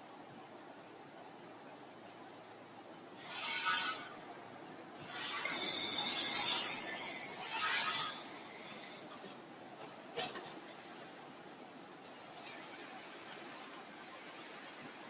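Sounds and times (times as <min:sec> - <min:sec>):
laser welding hissing and crackling: 0:05.2 - 0:09.0.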